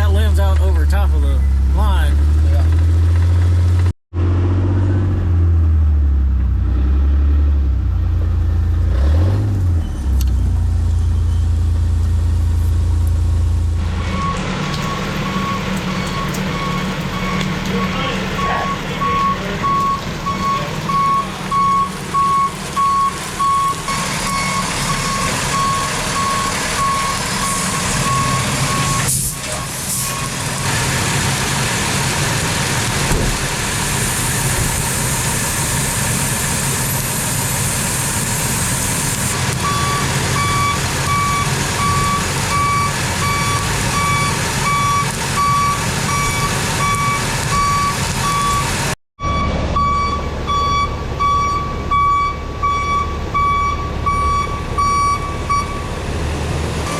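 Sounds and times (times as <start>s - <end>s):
truck engine running: 7.6s - 56.9s
truck backup alarm beeping: 9.7s - 12.5s, 13.8s - 30.6s, 39.3s - 56.0s.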